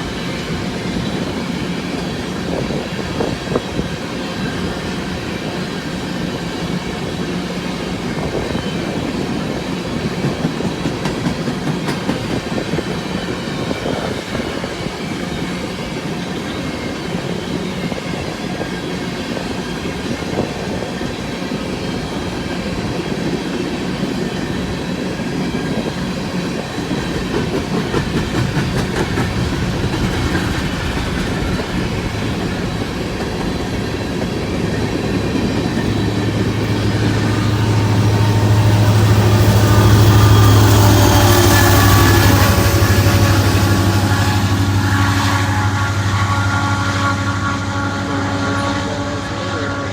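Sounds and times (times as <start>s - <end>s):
train wheels clattering over rail joints: 0.5s - 15.5s, 22.2s - 44.4s.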